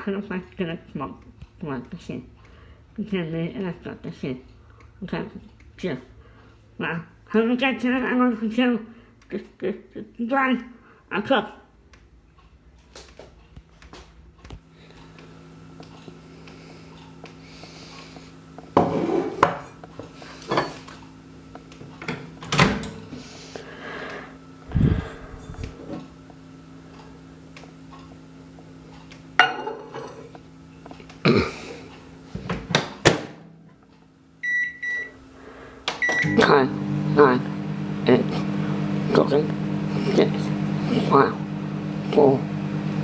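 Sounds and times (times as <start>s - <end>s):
microwave humming: 11.7s - 43.0s
dishes clattering: 20.5s - 20.9s, 29.4s - 30.3s
short electronic beep: 36.0s - 36.4s.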